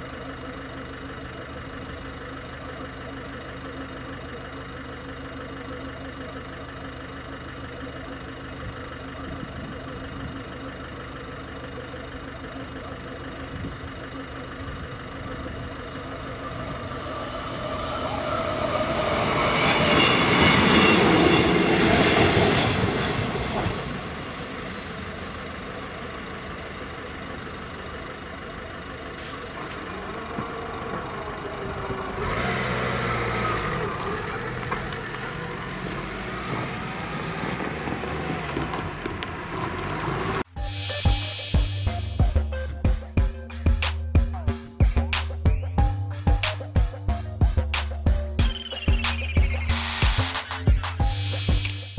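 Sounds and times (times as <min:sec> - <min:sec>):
diesel train passing: 0:00.0 - 0:51.9.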